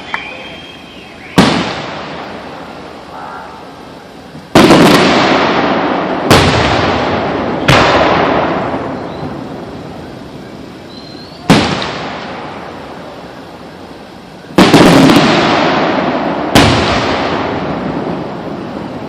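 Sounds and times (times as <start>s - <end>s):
faint rising whistle: 0.0s - 1.4s, 8.9s - 9.4s, 10.8s - 11.5s
fireworks bursting with loud bangs: 0.0s - 19.0s
rumbling echo: 4.6s - 10.7s.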